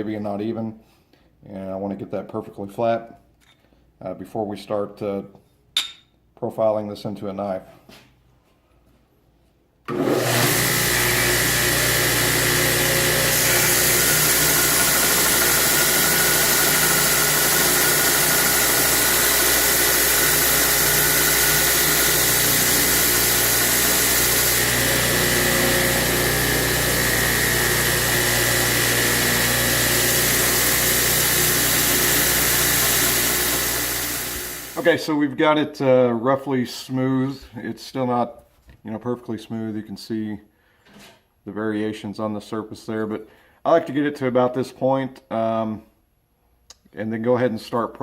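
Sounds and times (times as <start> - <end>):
belt grinder grinding steel: 9.9 - 34.9
machine hum: 9.9 - 34.9.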